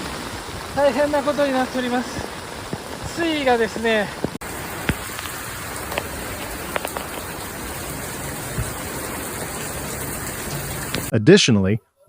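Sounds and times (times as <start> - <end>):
heavy rain falling: 0.0 - 11.1
single raindrops ticking: 4.1 - 11.1.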